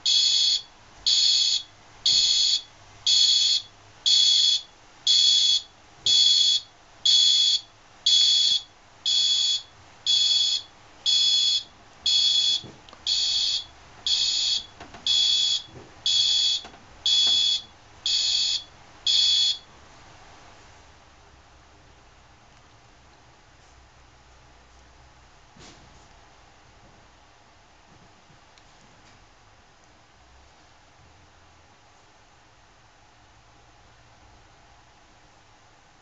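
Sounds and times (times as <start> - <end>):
fire alarm beeping: 0.0 - 19.7.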